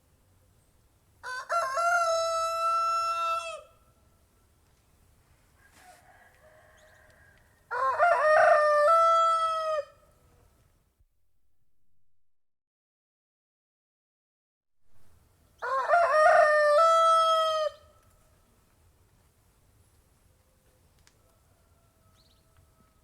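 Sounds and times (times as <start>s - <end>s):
rooster crowing: 1.2s - 3.8s, 5.6s - 10.0s, 15.6s - 18.0s, 21.2s - 23.0s.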